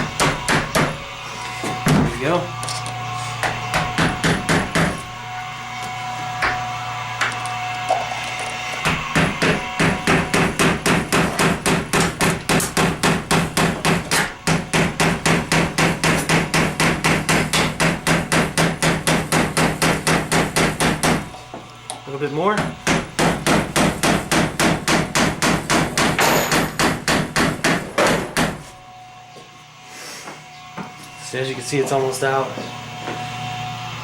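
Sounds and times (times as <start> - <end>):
hammer striking a punch: 0.0 - 1.0, 3.4 - 5.0, 8.8 - 21.3, 22.6 - 28.6.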